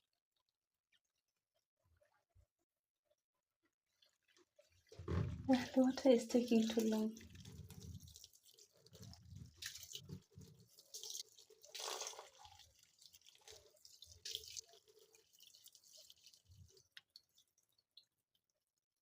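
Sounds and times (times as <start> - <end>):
faint dripping and splashing: 3.6 - 19.0
water filling washing machine: 3.9 - 17.4.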